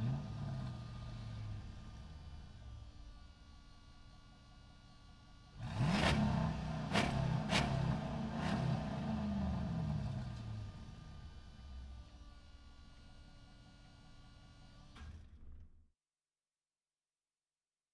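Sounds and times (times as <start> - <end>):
truck engine accelerating: 0.0 - 2.8, 5.6 - 11.9.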